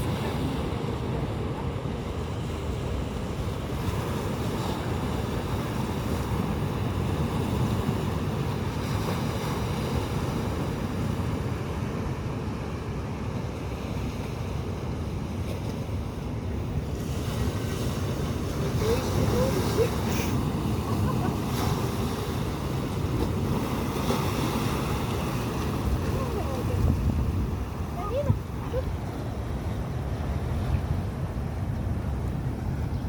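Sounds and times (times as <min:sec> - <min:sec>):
surf washing onto beach: 0:14.1 - 0:33.0
wind buffeting microphone: 0:16.4 - 0:33.0.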